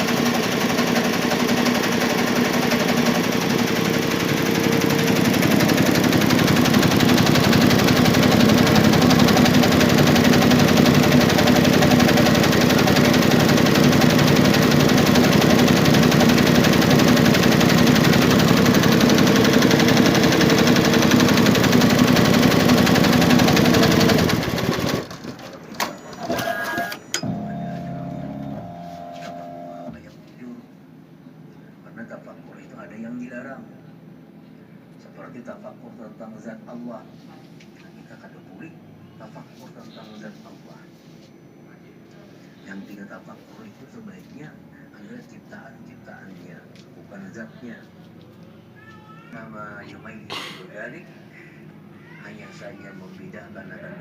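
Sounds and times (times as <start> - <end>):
embroidery machine clatter: 0.0 - 27.4.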